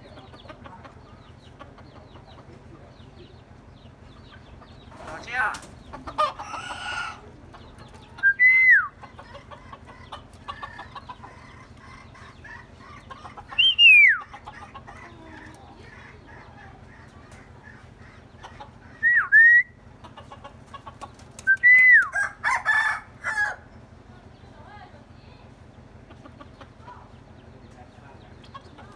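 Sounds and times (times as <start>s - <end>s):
faint bird chattering and clucking: 0.0s - 28.9s
myna whistling: 8.2s - 9.0s, 13.6s - 14.3s, 19.0s - 19.8s, 21.4s - 22.2s.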